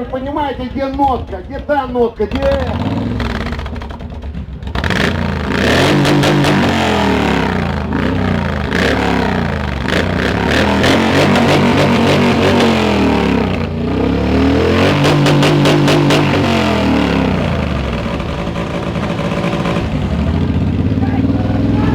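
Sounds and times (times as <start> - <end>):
motorcycle engine revving: 0.0 - 21.9.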